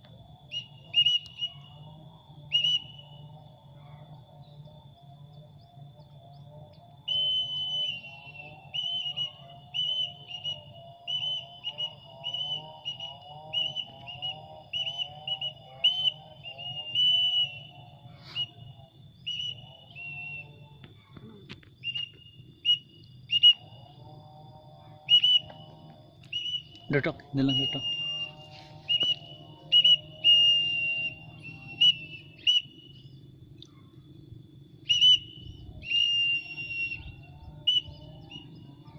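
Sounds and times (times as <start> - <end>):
whistle blown in sharp notes: 0.5 - 1.9, 2.5 - 3.4, 7.1 - 18.7, 19.3 - 20.7, 21.8 - 23.7, 25.1 - 33.1, 34.8 - 38.6.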